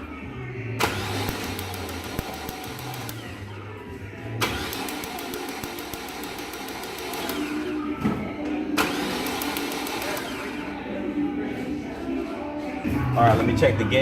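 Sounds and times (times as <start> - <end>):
starter cranking engine: 0.8 - 3.5, 4.4 - 7.7, 8.8 - 10.6.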